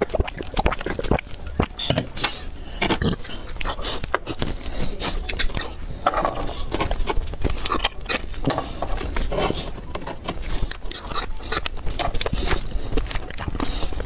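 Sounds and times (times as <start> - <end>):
crunching and chewing: 0.0 - 14.0
utensils clinking on a dish: 7.6 - 14.0.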